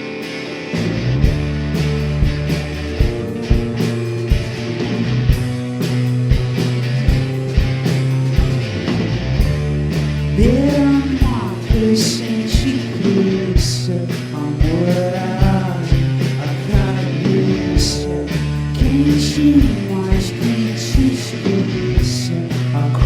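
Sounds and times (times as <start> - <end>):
live rock band playing: 0.0 - 23.0
person singing: 10.4 - 23.0.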